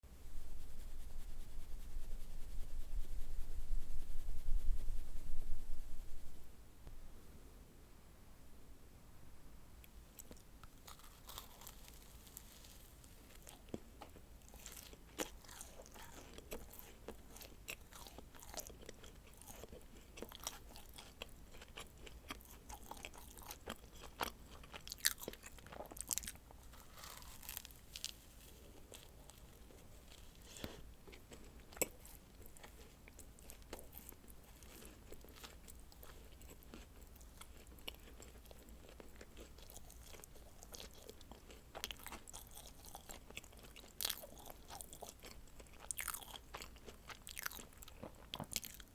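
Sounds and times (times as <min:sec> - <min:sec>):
crunchy chewing and biting: 0:10.2 - 0:48.9.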